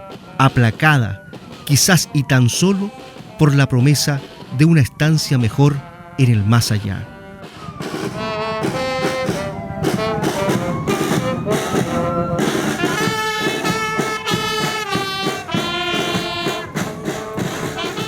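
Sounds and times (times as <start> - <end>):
steady drumbeat: 0.0 - 5.7, 6.8 - 18.0
brass horns sliding between notes: 0.0 - 18.0.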